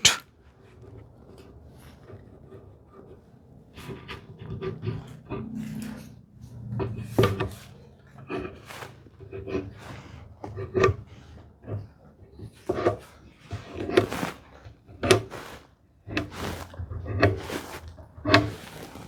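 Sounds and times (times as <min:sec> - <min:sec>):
wooden knocks and scrapes: 0:00.0 - 0:00.2, 0:06.8 - 0:07.7, 0:15.0 - 0:19.0.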